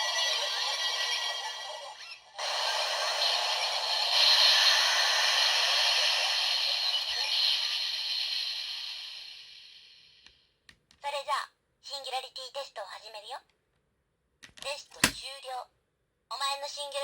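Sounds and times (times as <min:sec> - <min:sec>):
toy belt electronic music and effects: 0:00.0 - 0:10.0.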